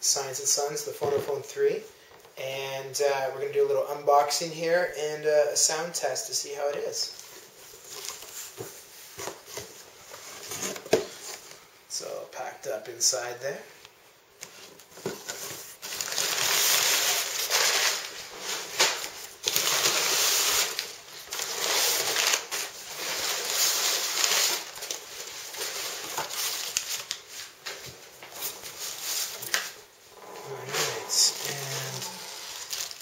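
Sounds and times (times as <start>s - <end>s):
plastic wrapping rustling and crinkling: 7.0s - 11.7s, 14.4s - 33.0s.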